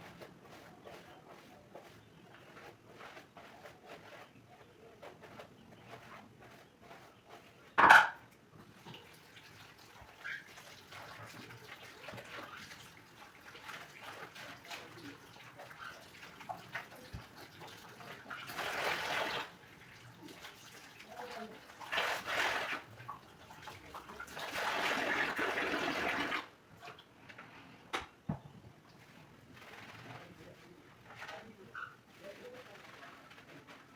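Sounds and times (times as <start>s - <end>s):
running water splashing: 8.7s - 26.5s.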